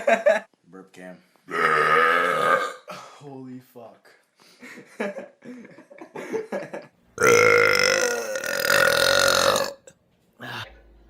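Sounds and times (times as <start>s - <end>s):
person belching: 1.5s - 2.9s, 7.2s - 9.9s.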